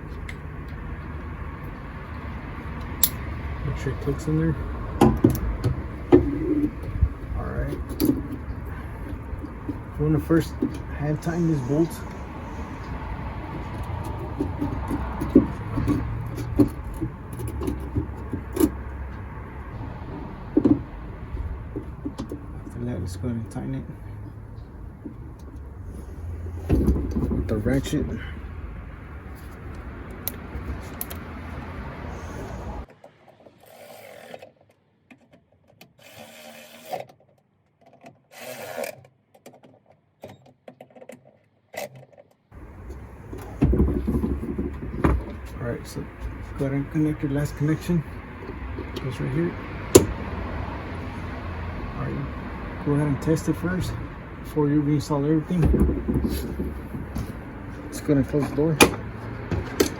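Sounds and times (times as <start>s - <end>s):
bolts clicking and knocking: 0.0s - 19.4s, 20.5s - 22.9s, 26.5s - 28.3s, 32.8s - 50.3s, 54.6s - 59.9s.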